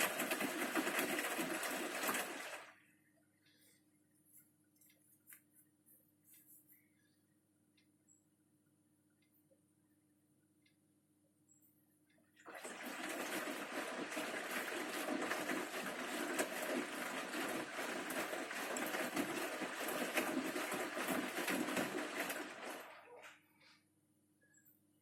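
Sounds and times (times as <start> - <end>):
water swishing in washing machine: 0.0 - 3.0, 12.4 - 23.6.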